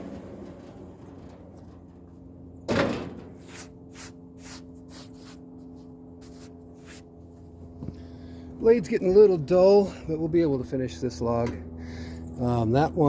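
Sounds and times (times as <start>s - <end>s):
engine humming at idle: 0.0s - 13.0s
short scraping strokes: 3.2s - 7.1s.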